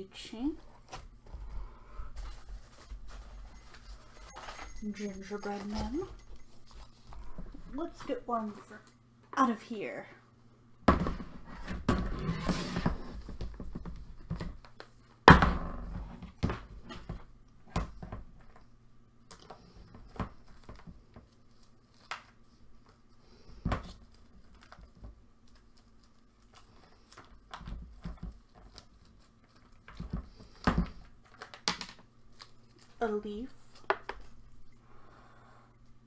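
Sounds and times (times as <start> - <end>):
faint low hum: 0.0 - 21.7
small objects knocking and rustling: 2.2 - 8.2, 23.6 - 33.0, 33.7 - 34.8.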